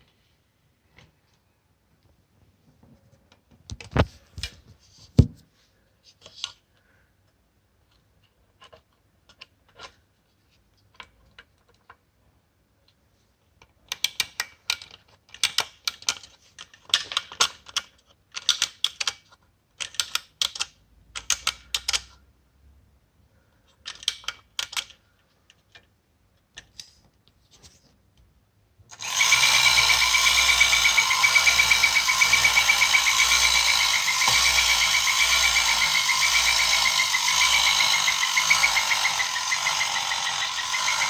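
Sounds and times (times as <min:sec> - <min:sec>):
clockwork toy clicking and clattering: 0:13.9 - 0:22.1, 0:23.8 - 0:25.0, 0:28.9 - 0:41.0.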